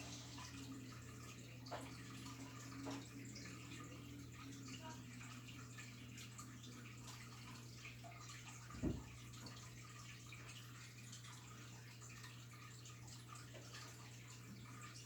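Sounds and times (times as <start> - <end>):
water trickling and dripping: 0.0 - 15.0
low thump: 8.8 - 9.1.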